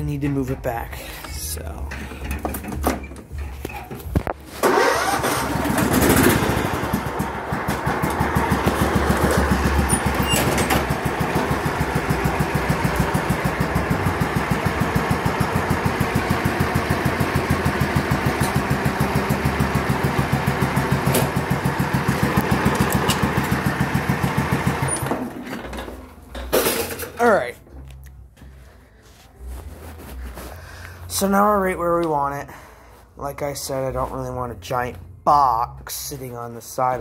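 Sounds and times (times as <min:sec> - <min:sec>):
small mower engine running: 0:04.6 - 0:26.0.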